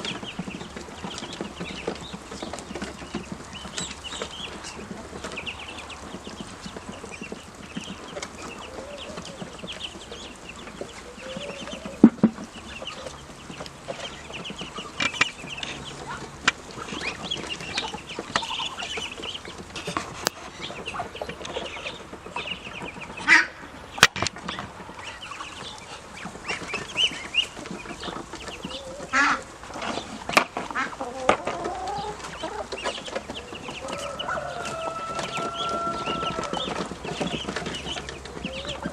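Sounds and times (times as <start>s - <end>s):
ducklings peeping: 0.0s - 38.9s
sharp knocks: 12.0s - 12.5s.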